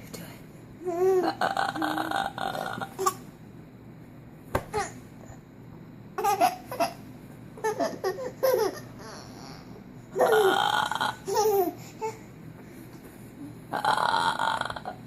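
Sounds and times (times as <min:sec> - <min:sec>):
rough vocal noise: 0:01.2 - 0:03.2, 0:10.2 - 0:11.3, 0:13.7 - 0:15.0.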